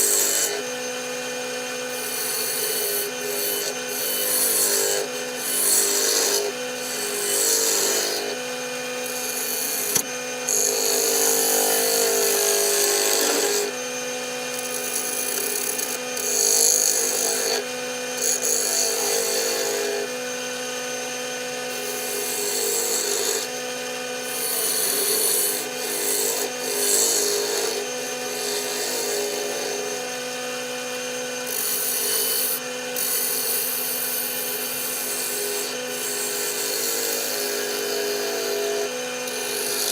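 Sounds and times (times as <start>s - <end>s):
wood lathe humming: 0.0s - 39.9s
tool rubbing on spinning wood: 2.0s - 8.3s, 24.3s - 29.8s.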